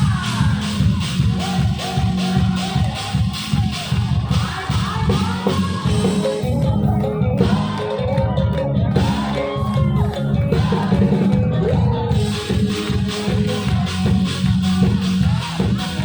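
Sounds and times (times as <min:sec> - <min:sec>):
heavy pulsing bass: 0:00.0 - 0:16.0
live band over sound system: 0:00.0 - 0:16.0.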